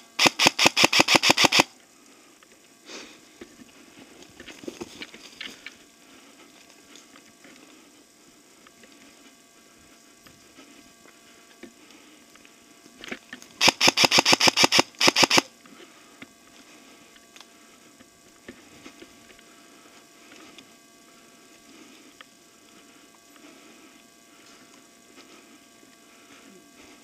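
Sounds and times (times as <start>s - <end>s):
airsoft gun firing: 0.2s - 1.7s, 13.6s - 15.5s.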